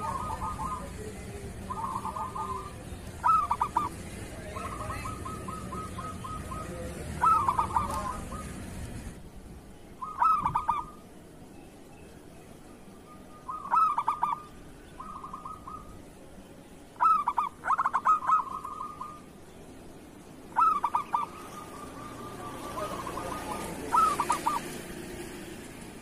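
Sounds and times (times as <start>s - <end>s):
dove cooing song: 0.0s - 9.2s, 10.0s - 11.1s, 13.0s - 16.4s, 17.0s - 19.4s, 20.5s - 25.6s.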